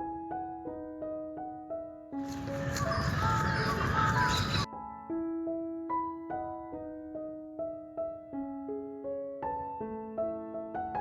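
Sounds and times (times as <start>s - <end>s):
soft piano music: 0.0s - 11.0s
noisy ambient sound: 2.2s - 4.7s.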